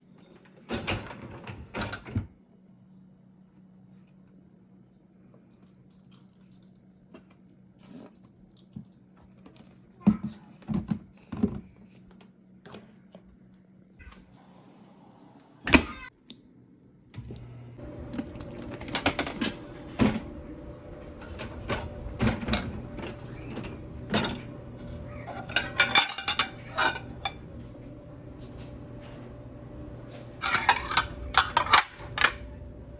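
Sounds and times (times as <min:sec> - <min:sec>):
steady low hum: 0:16.6 - 0:32.9
plates and cutlery clinking: 0:22.2 - 0:27.4, 0:30.4 - 0:32.4.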